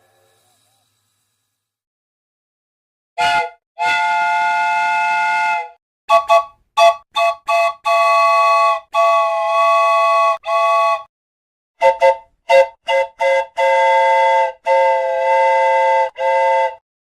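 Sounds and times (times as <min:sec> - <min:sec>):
train whistle chord blasts: 0:03.2 - 0:11.1, 0:11.8 - 0:16.8.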